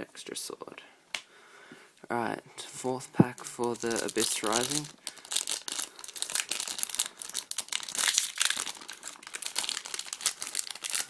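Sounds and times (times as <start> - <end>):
foil wrapper crinkling and tearing: 3.4 - 11.0.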